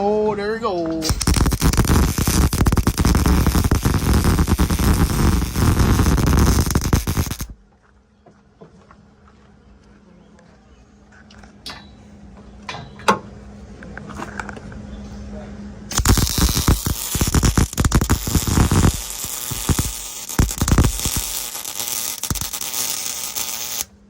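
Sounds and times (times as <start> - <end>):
welding arc crackling: 1.0 - 7.6, 15.9 - 23.9.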